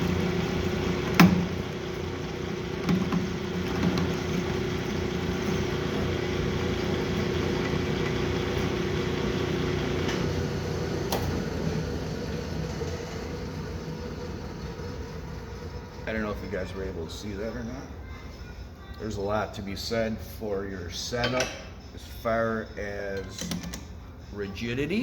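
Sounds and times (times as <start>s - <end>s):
metal lathe humming: 0.0s - 18.0s.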